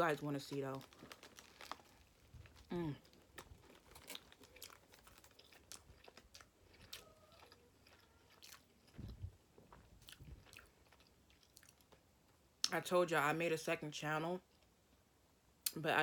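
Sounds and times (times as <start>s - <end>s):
person chewing a sandwich: 0.8s - 12.4s.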